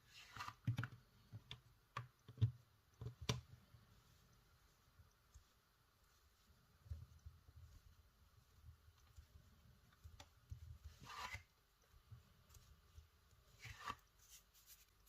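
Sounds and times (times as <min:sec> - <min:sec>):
clay rubbing scrapes: 0:00.0 - 0:00.6, 0:03.9 - 0:15.0.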